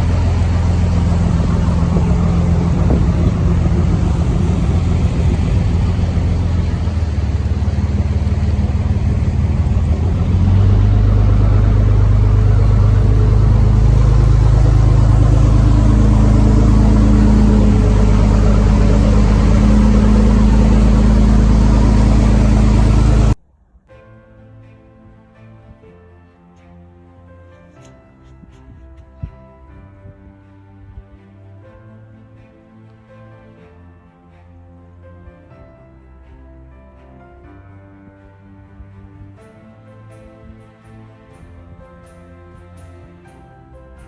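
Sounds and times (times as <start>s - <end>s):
vehicle engine running: 0.0s - 23.4s
faint music: 0.0s - 44.0s.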